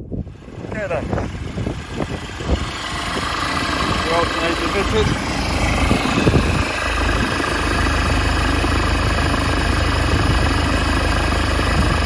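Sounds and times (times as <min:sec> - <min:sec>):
pickup engine idling: 0:00.0 - 0:12.0.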